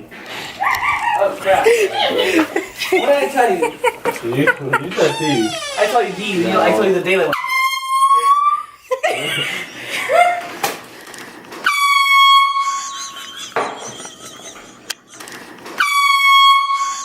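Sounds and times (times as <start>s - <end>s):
handheld air horn blasting: 7.3s - 8.6s, 11.6s - 13.2s, 15.8s - 17.0s.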